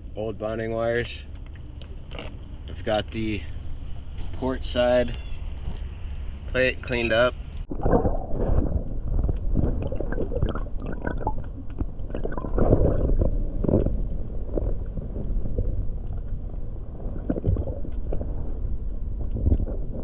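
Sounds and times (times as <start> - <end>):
underwater gurgling and bubbling: 7.6 - 20.0.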